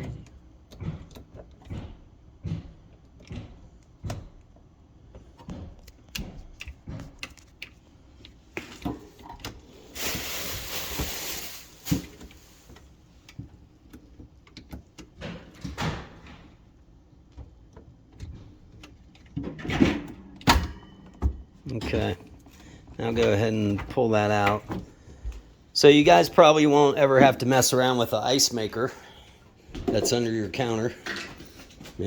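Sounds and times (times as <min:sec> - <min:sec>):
knocks and rattles of appliance: 0:00.0 - 0:07.4, 0:13.3 - 0:25.3
rushing hiss: 0:09.9 - 0:12.4.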